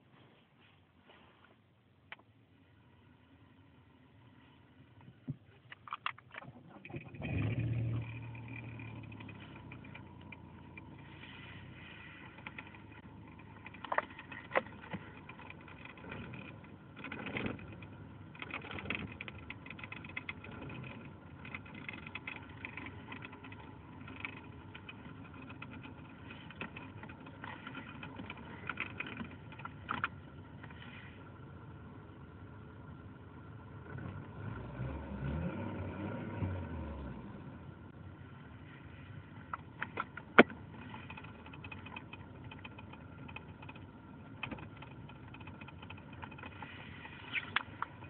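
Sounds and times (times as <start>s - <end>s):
car engine idling: 1.0s - 34.4s, 37.4s - 48.0s
sharp clicks and ticks: 12.4s - 30.2s, 39.5s - 46.7s.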